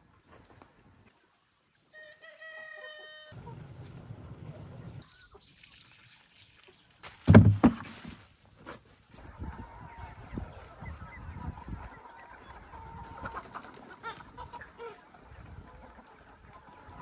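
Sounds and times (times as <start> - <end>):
rooster crowing: 2.0 - 3.4
loud close knocks: 7.2 - 8.0
chickens clucking: 9.2 - 17.0.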